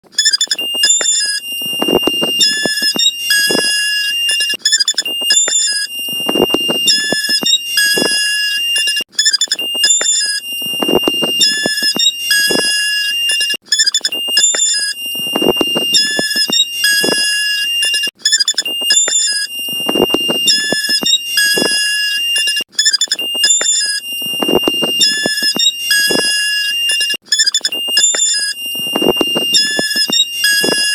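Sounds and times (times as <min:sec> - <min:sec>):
electronic beeping: 0:00.2 - 0:30.9
high-pitched electronic tone: 0:00.2 - 0:30.9
harsh low electronic bursts: 0:00.7 - 0:03.8, 0:05.0 - 0:08.2, 0:09.7 - 0:12.7, 0:14.0 - 0:17.3, 0:18.8 - 0:21.8, 0:23.3 - 0:26.3, 0:27.8 - 0:30.9.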